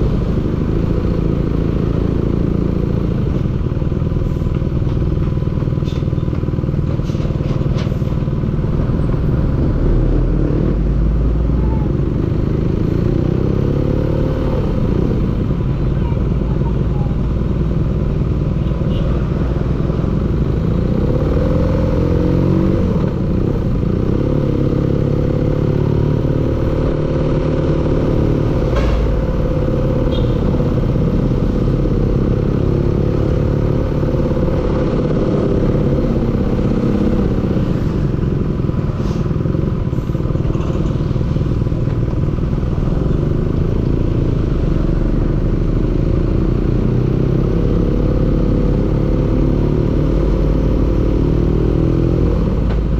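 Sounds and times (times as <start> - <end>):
engine running and knocking: 0.0 - 52.9.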